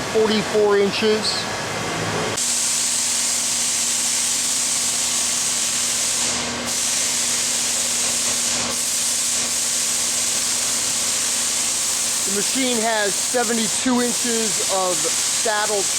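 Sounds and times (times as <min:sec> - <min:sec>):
machine hiss: 0:02.4 - 0:15.9.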